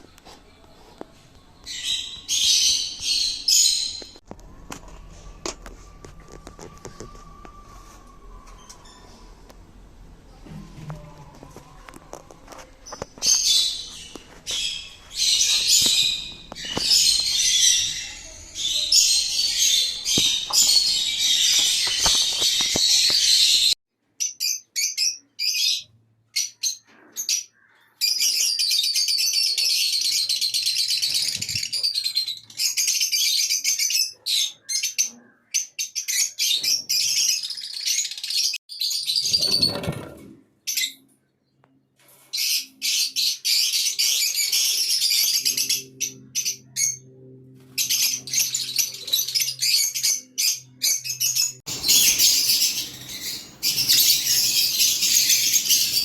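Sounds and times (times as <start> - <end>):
parrots chattering and chirping: 12.8 - 25.7, 47.8 - 56.0.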